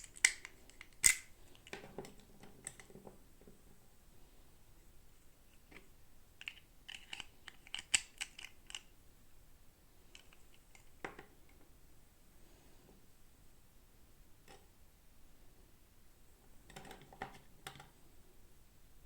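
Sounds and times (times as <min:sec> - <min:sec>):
plastic toy pieces clicking: 0:00.0 - 0:01.8, 0:06.4 - 0:08.9.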